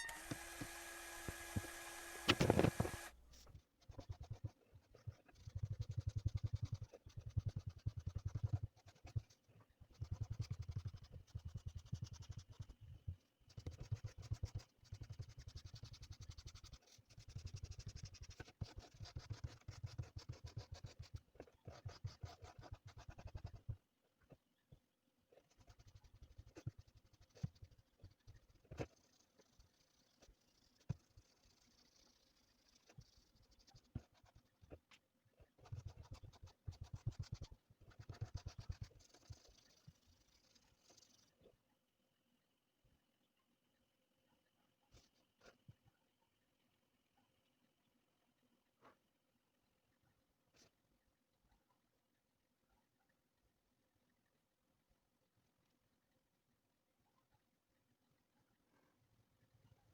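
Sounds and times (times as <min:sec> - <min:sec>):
short pitched tone: 0:00.0 - 0:00.3
chalk scratching: 0:00.0 - 0:12.9, 0:13.5 - 0:23.8, 0:25.4 - 0:34.8, 0:35.5 - 0:41.3.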